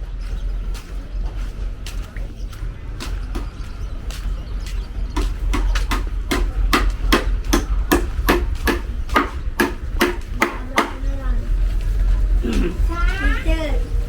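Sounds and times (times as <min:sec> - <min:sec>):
steady low rumble: 0:00.0 - 0:14.0
sharp hammering knocks: 0:05.1 - 0:11.1.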